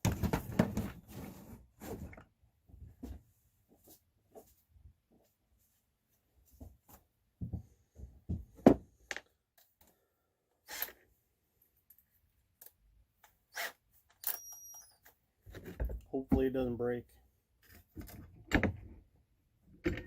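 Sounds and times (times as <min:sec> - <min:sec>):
tools clicking and knocking: 0:19.8 - 0:20.0.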